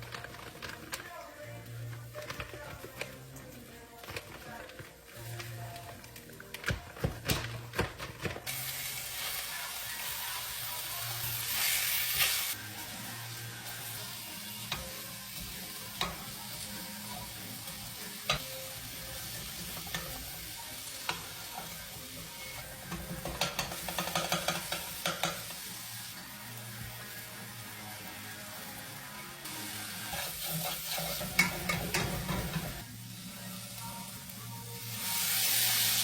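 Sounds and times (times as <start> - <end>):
food sizzling in a frying pan: 7.2 - 36.0
utensil clicking against pan: 22.6 - 25.6, 30.1 - 32.8.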